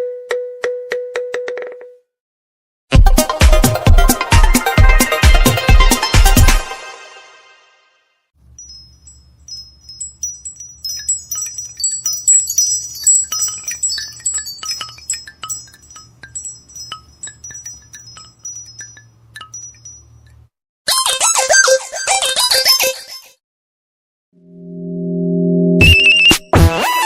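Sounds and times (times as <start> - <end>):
phone ringtone tinkling chimes: 8.5 - 20.5.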